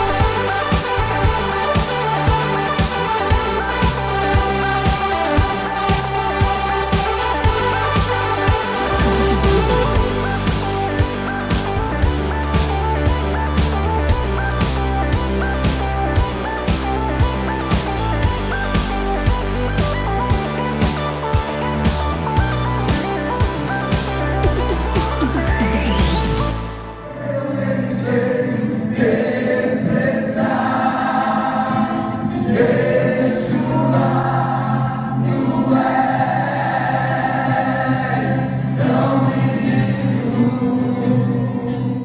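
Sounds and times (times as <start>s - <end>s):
guitar and drums music: 0.0s - 27.2s
low accompaniment: 0.0s - 27.4s
choir singing gospel chords: 0.0s - 40.6s.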